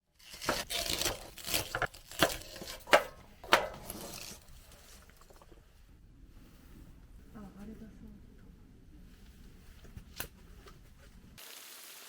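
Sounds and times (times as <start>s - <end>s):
knife chopping on cutting board: 0.2s - 4.3s.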